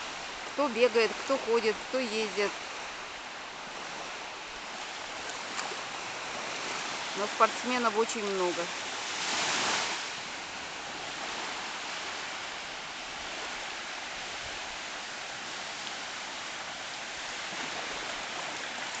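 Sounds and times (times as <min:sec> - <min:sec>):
small waves washing on beach: 0:00.0 - 0:19.0.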